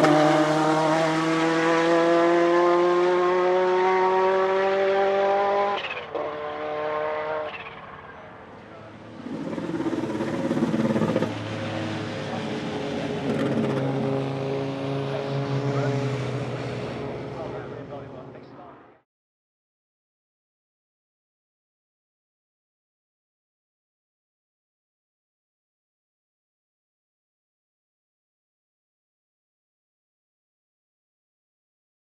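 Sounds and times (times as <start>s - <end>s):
race car engine accelerating: 0.0s - 18.5s.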